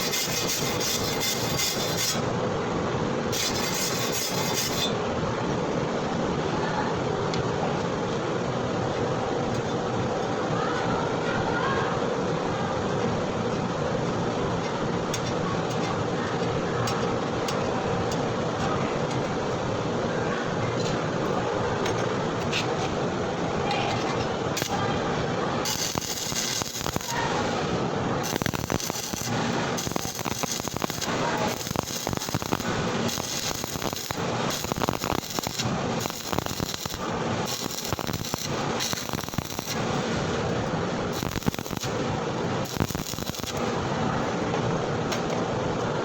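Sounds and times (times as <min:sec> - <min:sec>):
welding arc crackling and popping: 0:00.0 - 0:02.3, 0:03.3 - 0:04.9, 0:24.0 - 0:24.9, 0:25.6 - 0:43.9.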